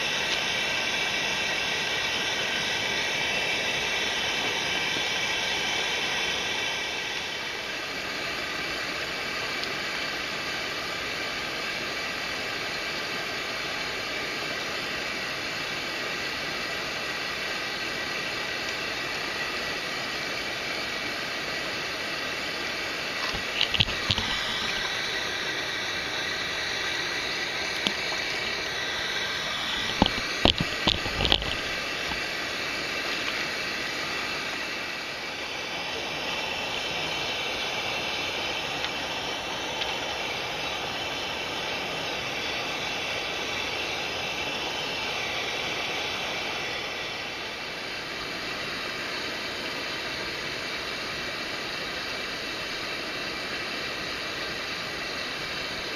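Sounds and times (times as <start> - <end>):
stream water rushing: 0.0 - 55.9.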